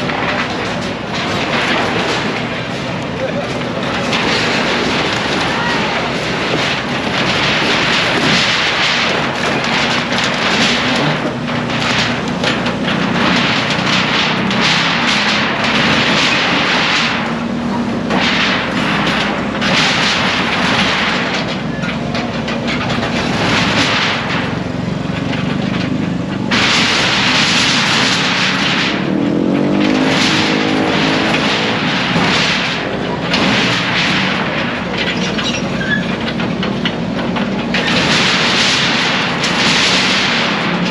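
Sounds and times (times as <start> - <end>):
engine running: 0.0 - 40.9
rushes of rough noise: 0.0 - 40.9.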